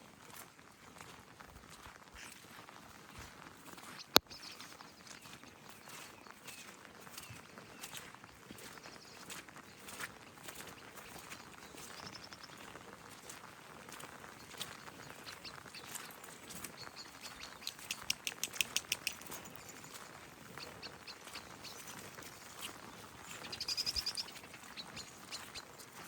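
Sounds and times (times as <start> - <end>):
small birds chirping: 1.7 - 26.0
sharp bird chattering: 14.6 - 25.7.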